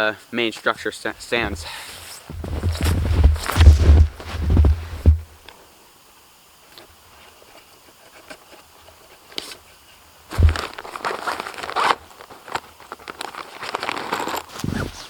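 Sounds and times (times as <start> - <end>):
snow crunching: 1.2 - 5.4, 10.3 - 11.0
rustling: 1.2 - 5.5, 10.3 - 12.3
heavy thump: 1.3 - 1.7, 2.3 - 5.4, 10.4 - 10.8.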